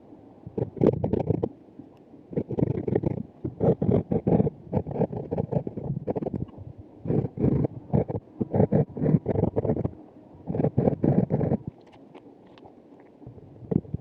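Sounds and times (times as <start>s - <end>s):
scratchy scraping on microphone: 2.4s - 6.5s, 7.1s - 11.7s.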